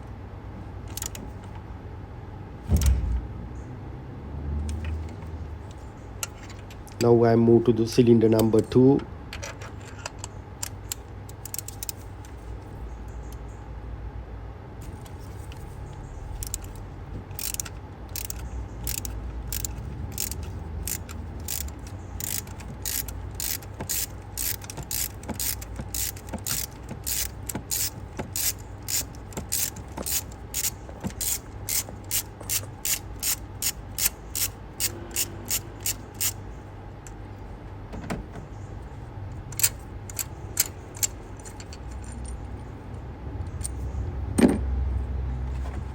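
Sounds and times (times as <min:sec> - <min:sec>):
ratchet wrench clicking: 0:00.9 - 0:01.2, 0:10.0 - 0:12.0, 0:16.3 - 0:36.4, 0:39.5 - 0:42.3.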